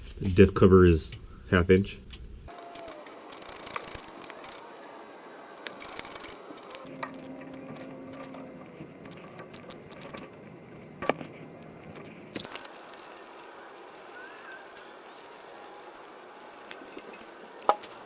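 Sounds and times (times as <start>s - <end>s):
short steady hum: 2.5s - 16.5s.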